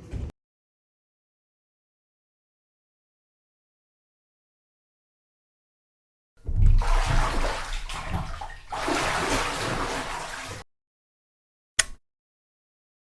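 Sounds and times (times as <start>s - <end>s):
running splashing water: 6.4s - 10.6s.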